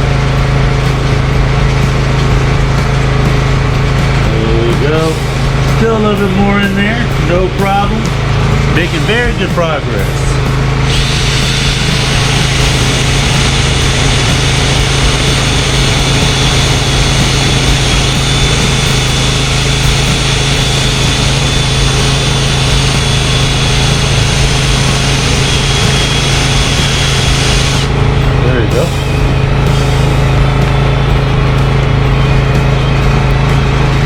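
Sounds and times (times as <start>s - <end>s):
electric sander running: 0.0s - 34.0s.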